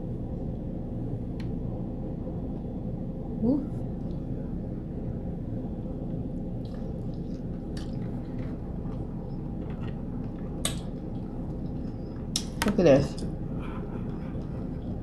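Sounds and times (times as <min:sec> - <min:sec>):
low room hum: 0:00.0 - 0:15.0
person chewing food: 0:06.6 - 0:12.6, 0:13.2 - 0:15.0.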